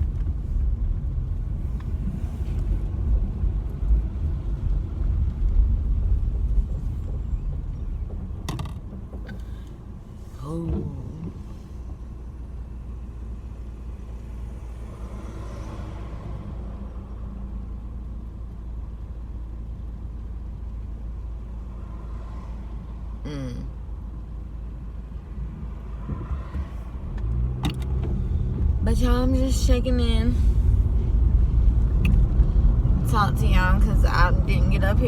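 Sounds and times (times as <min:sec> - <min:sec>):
car engine rumble: 0:00.0 - 0:35.0
road noise: 0:00.0 - 0:35.0.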